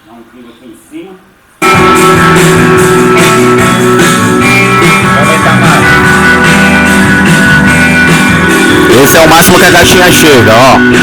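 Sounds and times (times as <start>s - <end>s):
loud rock music through speakers: 1.6s - 11.0s.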